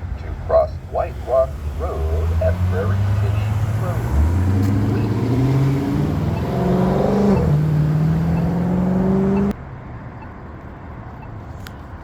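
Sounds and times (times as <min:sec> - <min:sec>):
car engine accelerating: 0:00.0 - 0:09.6
crosswalk locator tone ticks: 0:02.4 - 0:09.6.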